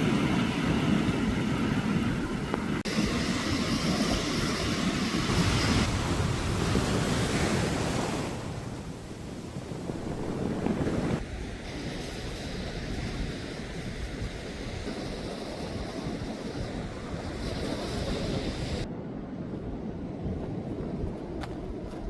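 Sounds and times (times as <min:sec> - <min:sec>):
wind buffeting microphone: 0:00.0 - 0:22.0
sea waves washing onto beach: 0:05.4 - 0:12.6.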